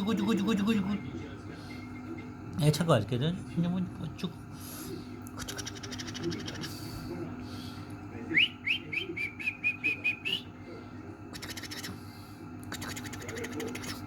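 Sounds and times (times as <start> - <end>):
parrot whistled chirps: 8.3 - 10.5.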